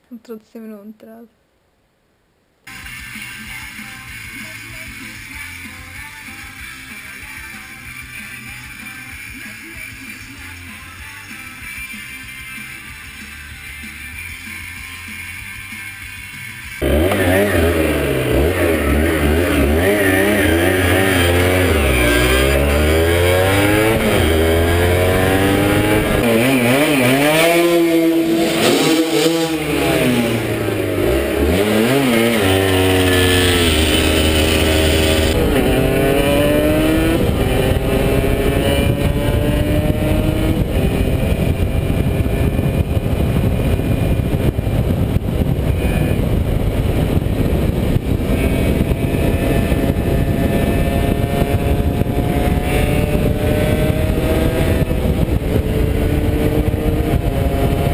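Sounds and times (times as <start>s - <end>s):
motorcycle engine revving: 16.7s - 57.9s
loud rushing noise: 16.8s - 57.9s.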